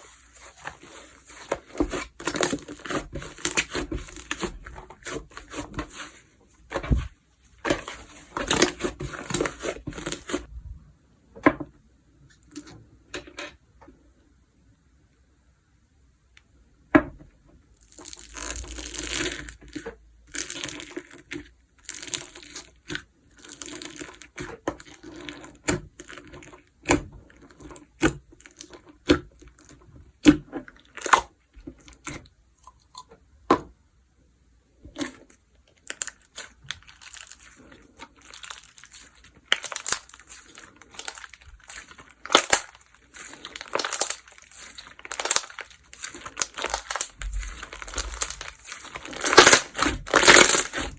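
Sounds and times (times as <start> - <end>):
slime squished by hand: 0.7 - 6.1, 35.0 - 50.9.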